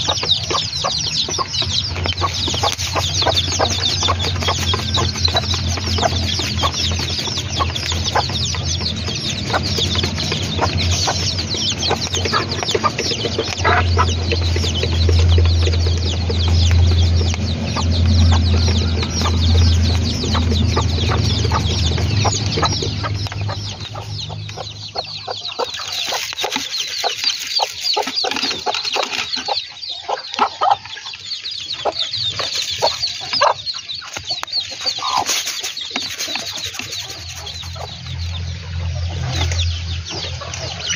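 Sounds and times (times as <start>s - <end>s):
steady low hum: 0.0s - 25.9s
chickens clucking and calling: 0.0s - 40.9s.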